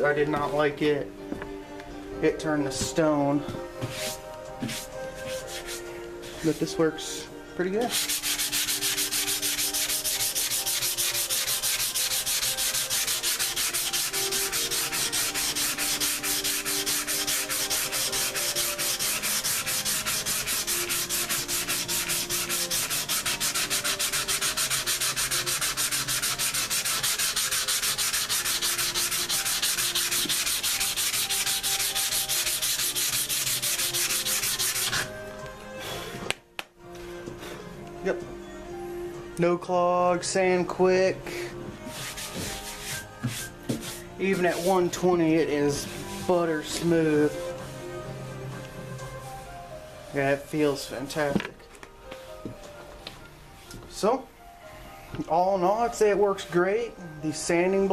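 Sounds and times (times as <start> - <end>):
hand sanding with sandpaper: 3.9 - 6.8, 7.9 - 35.1, 41.9 - 45.2.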